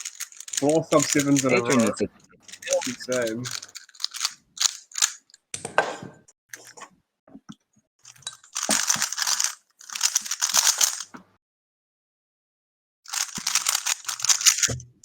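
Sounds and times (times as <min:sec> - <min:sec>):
rapid clacking cube turns: 0:00.0 - 0:01.8, 0:02.4 - 0:05.4, 0:08.0 - 0:11.1, 0:13.1 - 0:14.8
puzzle cube plastic clicks: 0:00.0 - 0:05.4, 0:08.1 - 0:11.1, 0:13.1 - 0:14.9.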